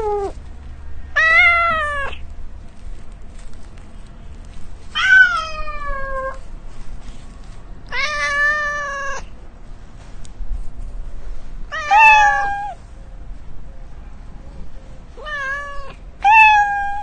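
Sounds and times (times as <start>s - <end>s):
cat meowing: 0.0s - 0.4s, 1.2s - 2.2s, 5.0s - 6.4s, 7.9s - 9.3s, 11.7s - 12.8s, 15.2s - 17.0s.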